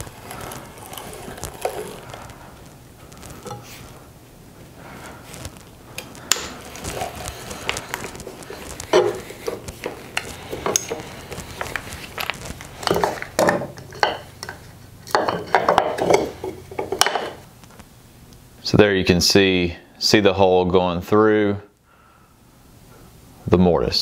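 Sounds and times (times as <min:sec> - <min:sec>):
hand drill scraping wood: 0:00.0 - 0:04.0, 0:04.9 - 0:17.4.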